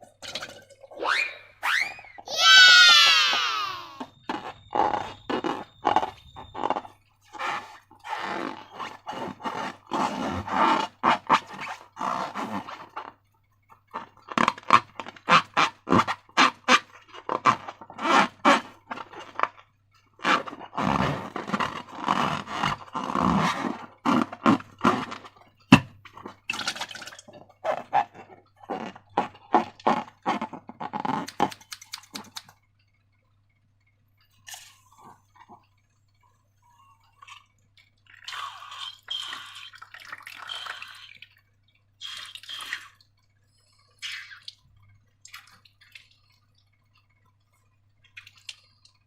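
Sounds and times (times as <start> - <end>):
slime squelching: 0.3 - 13.2, 13.9 - 32.6, 43.9 - 49.0.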